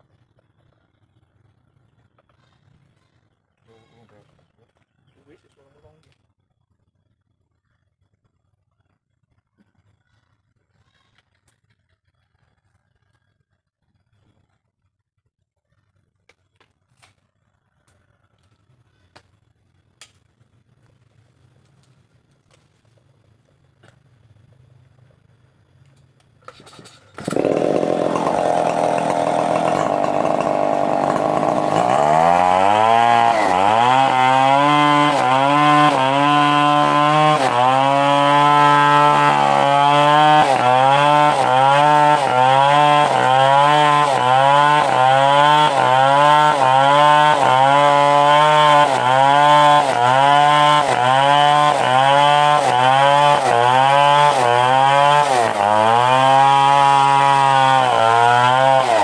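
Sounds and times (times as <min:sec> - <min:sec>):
chainsaw cutting wood: 0:26.4 - 0:59.0.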